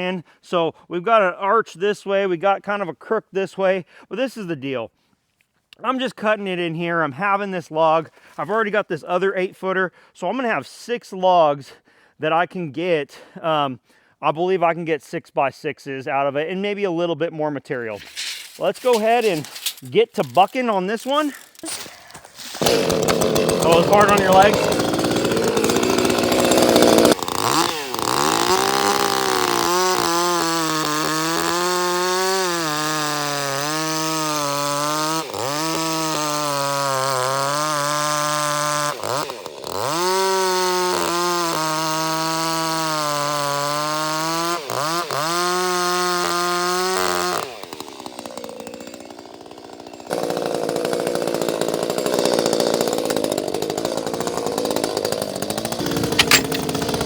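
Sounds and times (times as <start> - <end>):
chainsaw cutting a log: 18.0 - 57.0
rough noisy sound: 55.8 - 57.0.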